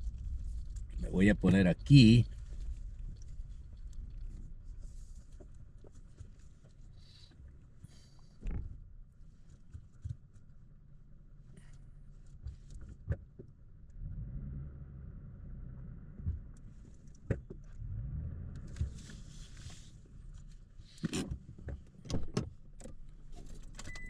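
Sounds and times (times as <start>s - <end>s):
car engine rumble: 0.0s - 24.0s
rustle: 18.6s - 21.1s.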